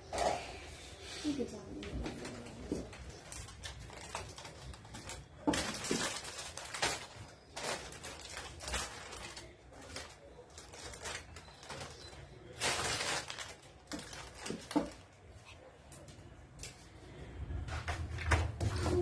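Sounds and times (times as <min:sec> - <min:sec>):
household items clattering: 0:01.8 - 0:15.1.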